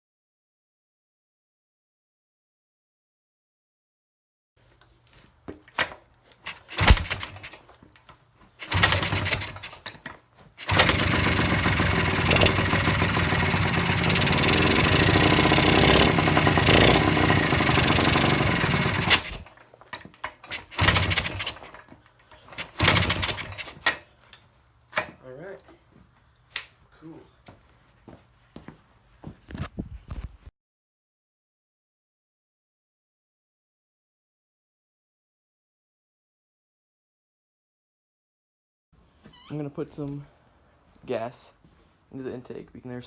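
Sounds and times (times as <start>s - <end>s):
two-stroke engine kicked over: 5.8s - 7.6s, 8.6s - 21.9s, 22.5s - 23.9s
two-stroke engine running: 6.5s - 7.6s, 8.6s - 9.8s, 10.6s - 19.5s, 20.5s - 21.8s, 22.6s - 23.7s.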